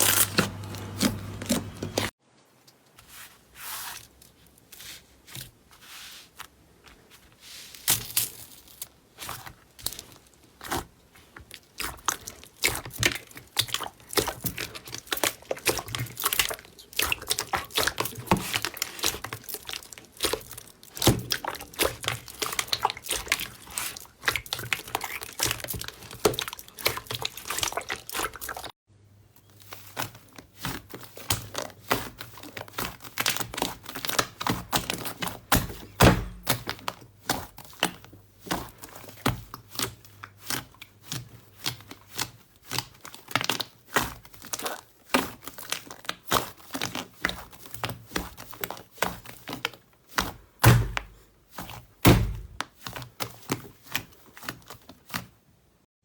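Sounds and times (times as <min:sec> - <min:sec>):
slime crackling and popping: 0:11.5 - 0:28.7
slime thuds: 0:34.5 - 0:38.7, 0:50.2 - 0:51.2, 0:52.0 - 0:52.6.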